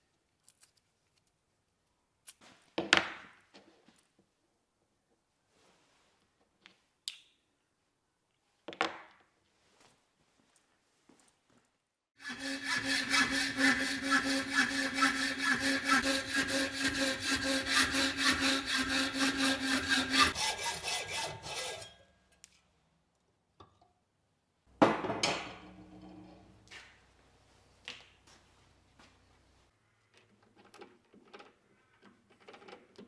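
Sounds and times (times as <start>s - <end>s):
power tool cutting: 12.2s - 21.8s.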